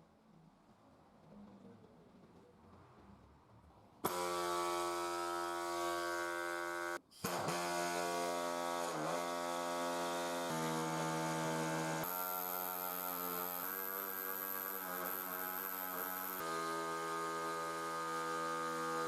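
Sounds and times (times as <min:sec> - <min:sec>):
electric power tool motor humming: 0:04.0 - 0:19.0.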